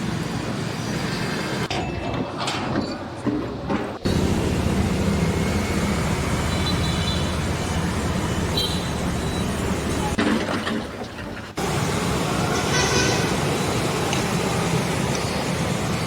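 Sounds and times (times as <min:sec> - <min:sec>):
engines rumbling: 0:04.0 - 0:10.3, 0:11.0 - 0:16.0.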